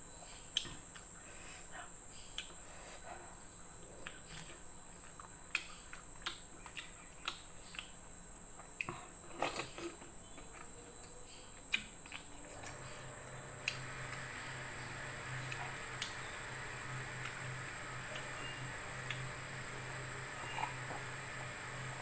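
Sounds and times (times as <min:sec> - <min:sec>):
chewing clicks and smacks: 0:04.0 - 0:08.0, 0:11.7 - 0:12.3
high-pitched insect trill: 0:12.8 - 0:22.0.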